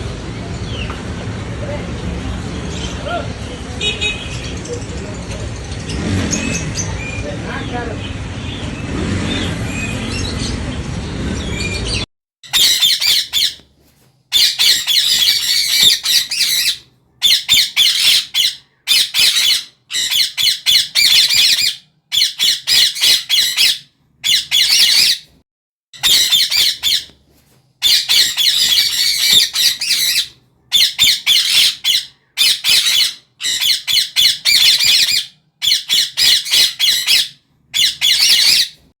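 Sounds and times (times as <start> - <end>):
parrot squawking: 12.5 - 13.6, 14.3 - 25.3, 26.0 - 27.1, 27.8 - 38.9.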